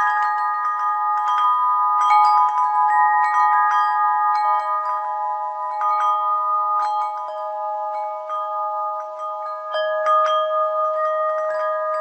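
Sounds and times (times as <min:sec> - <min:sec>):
metal bell chimes ringing: 0:00.0 - 0:12.0.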